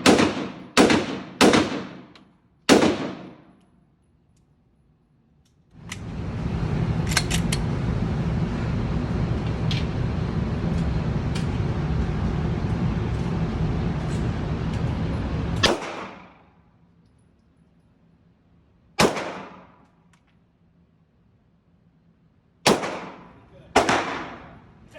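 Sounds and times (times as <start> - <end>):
gunfire cracks: 0.0 - 2.1, 2.7 - 3.5, 15.6 - 16.4, 19.0 - 19.8, 22.7 - 24.6
loud rumbling noise: 5.8 - 16.4.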